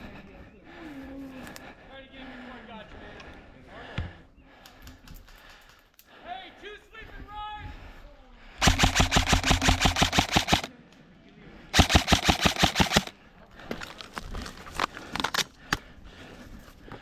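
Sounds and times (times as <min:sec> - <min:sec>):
airsoft rifle firing bursts: 0:08.6 - 0:10.7, 0:11.7 - 0:13.2.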